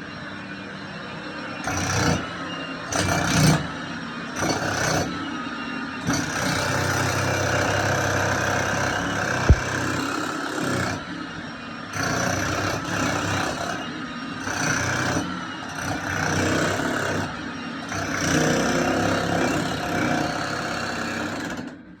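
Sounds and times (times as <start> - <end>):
hammer drill running in bursts: 1.6 - 21.8.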